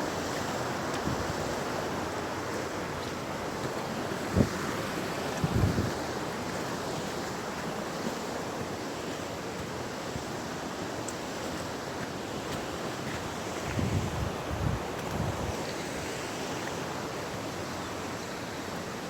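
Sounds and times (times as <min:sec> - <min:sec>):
fast-flowing water rushing: 0:00.0 - 0:19.0
wind rumble on microphone: 0:01.0 - 0:01.5, 0:04.2 - 0:06.1, 0:13.6 - 0:16.1.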